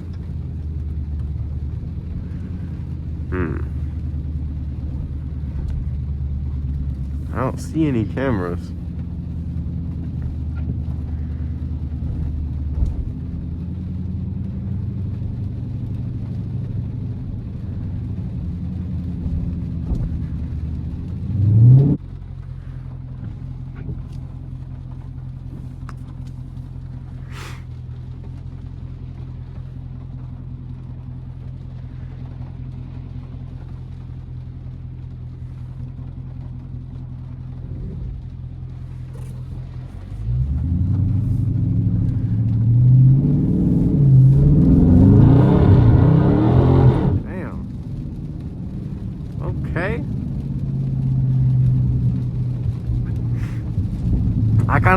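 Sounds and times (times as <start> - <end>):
car engine running: 0.0 - 54.9
engine revving: 6.7 - 8.8, 21.1 - 22.0, 38.1 - 54.9.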